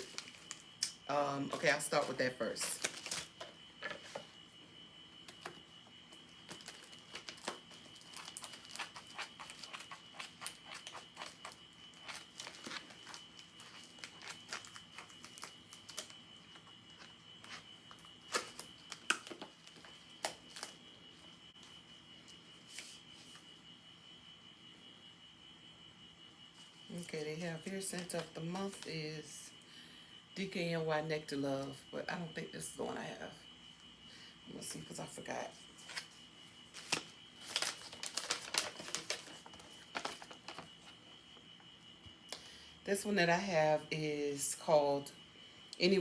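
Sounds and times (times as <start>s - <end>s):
packaging clicks and crinkles: 0.0s - 1.0s, 2.7s - 3.5s, 6.4s - 20.8s, 36.8s - 40.9s
faint high-pitched whine: 0.0s - 46.0s.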